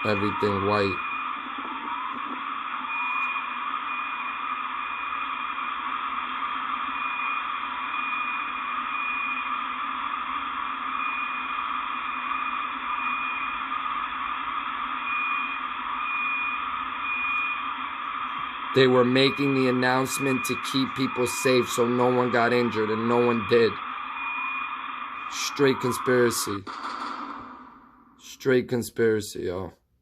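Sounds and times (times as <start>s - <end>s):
high beeping tone: 18.3s - 27.7s.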